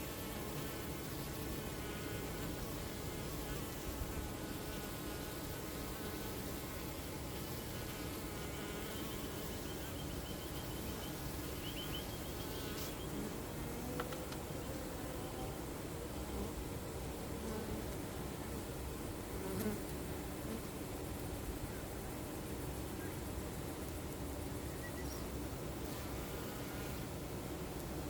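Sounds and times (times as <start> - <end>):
honeybees buzzing: 0.0 - 16.6, 25.6 - 28.0
faint high chirps: 24.6 - 25.4.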